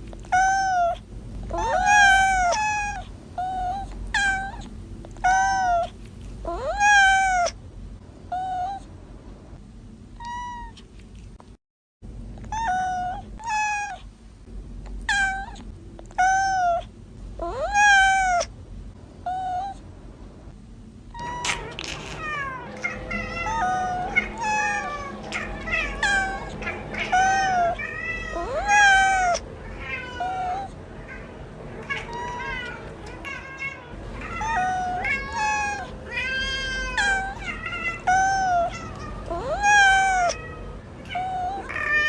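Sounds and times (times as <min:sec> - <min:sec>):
kittens meowing: 0:00.2 - 0:07.5, 0:21.2 - 0:42.0.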